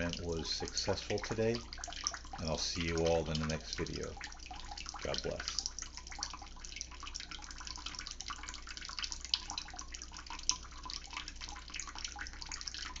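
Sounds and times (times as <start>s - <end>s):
low steady hum: 0.0s - 13.0s
running water splashing: 0.0s - 13.0s.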